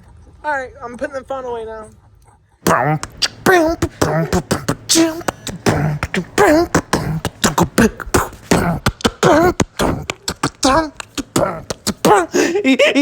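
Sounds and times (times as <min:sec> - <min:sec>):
person beatboxing: 0:02.6 - 0:12.7.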